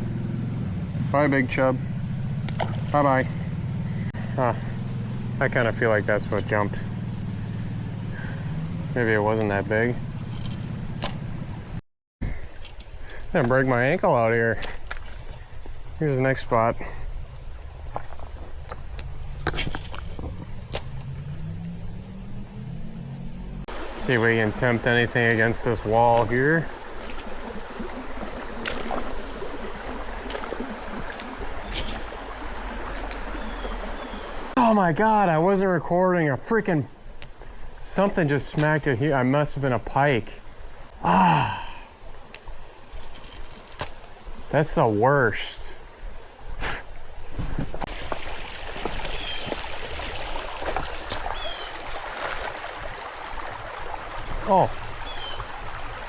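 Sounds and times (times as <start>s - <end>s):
creek water running: 0.0s - 11.8s, 23.5s - 56.0s
brief clicks and splashes: 2.4s - 3.2s, 25.1s - 34.0s, 47.6s - 55.5s.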